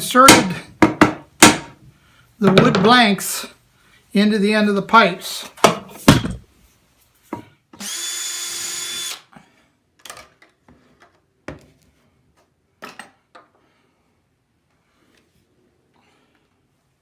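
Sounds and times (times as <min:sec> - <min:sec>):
power drill driving a screw: 0:07.8 - 0:09.3.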